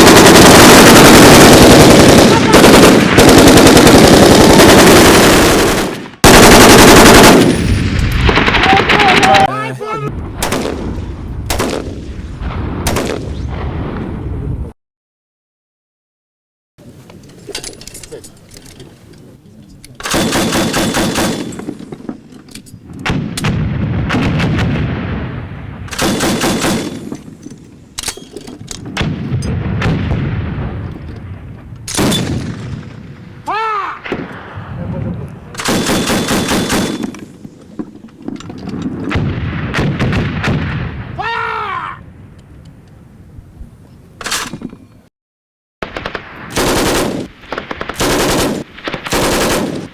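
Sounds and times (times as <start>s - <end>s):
automatic gunfire bursts: 0.0s - 7.7s, 20.0s - 21.6s, 25.9s - 27.1s, 35.6s - 37.2s, 45.8s - 49.9s
single gunshots: 10.4s - 13.8s.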